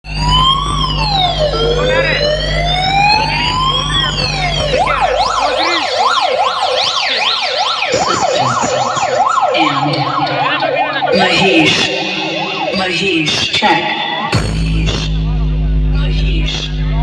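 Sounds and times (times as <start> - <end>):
electronic siren wail and yelp: 0.0 - 13.0.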